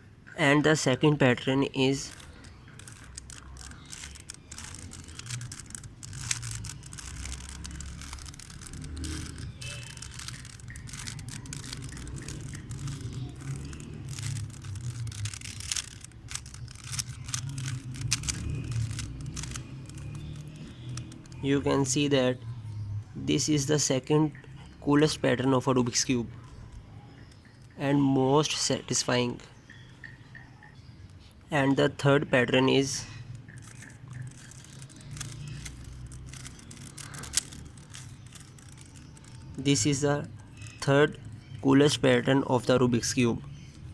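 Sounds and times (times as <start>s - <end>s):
puzzle cube clicking and rattling: 1.8s - 22.1s, 33.3s - 41.6s.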